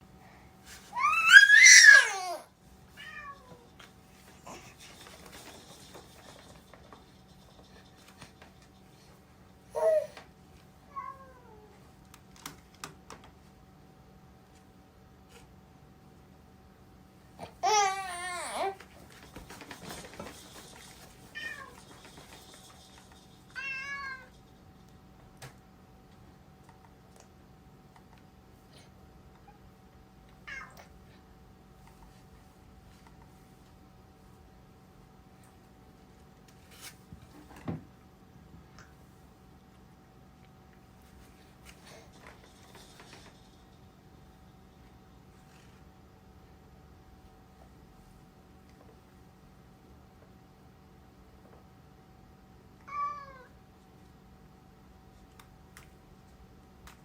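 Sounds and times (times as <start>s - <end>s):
faint clicks and rustling: 3.4s - 9.6s, 18.8s - 23.6s, 39.7s - 46.0s
cat meowing: 23.6s - 24.3s, 52.9s - 53.5s.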